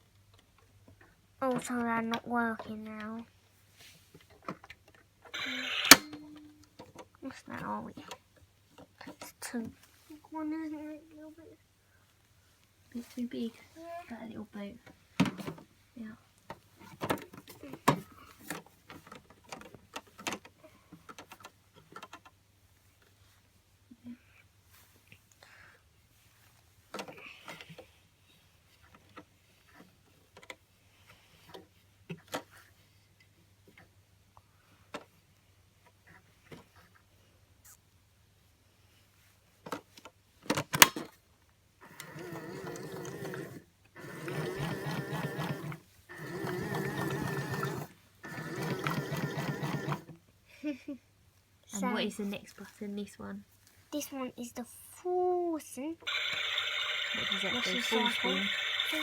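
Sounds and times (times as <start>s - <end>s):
small motor whirring: 5.4s - 6.1s, 42.0s - 50.1s, 56.1s - 59.0s.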